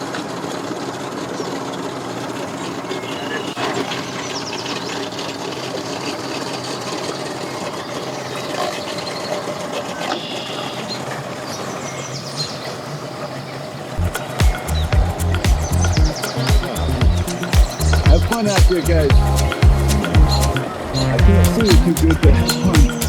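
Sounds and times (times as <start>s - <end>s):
music with heavy bass beat: 14.0s - 23.0s
outboard motor running: 14.0s - 23.0s.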